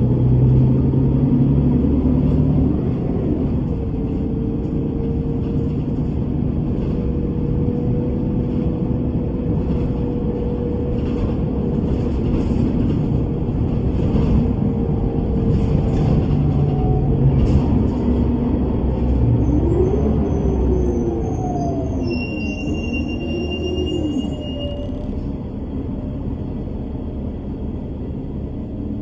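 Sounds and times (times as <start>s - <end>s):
bus engine and road rumble: 0.0s - 29.0s.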